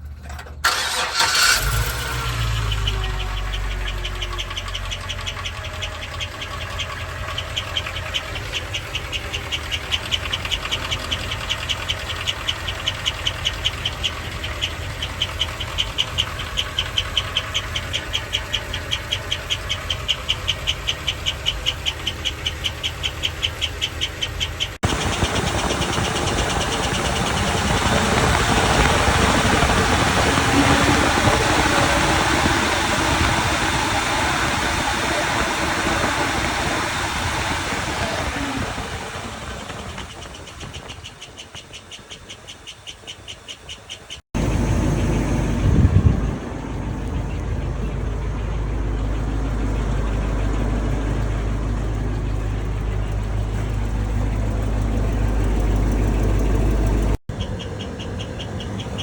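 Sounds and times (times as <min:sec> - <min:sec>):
engine running: 0:00.0 - 0:59.0
high-pitched rhythmic chirping: 0:02.6 - 0:45.5.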